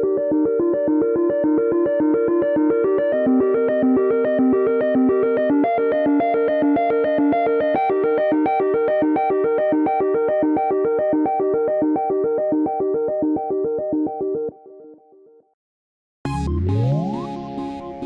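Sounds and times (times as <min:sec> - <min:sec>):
synthesizer ringtone tune: 0:16.3 - 0:18.0.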